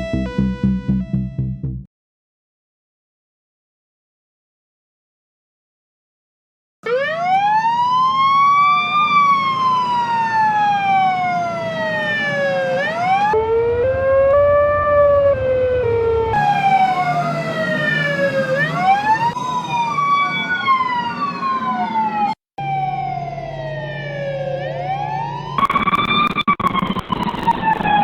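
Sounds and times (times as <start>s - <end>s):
ambulance siren wailing: 6.8s - 28.0s
low vehicle rumble: 7.9s - 25.7s.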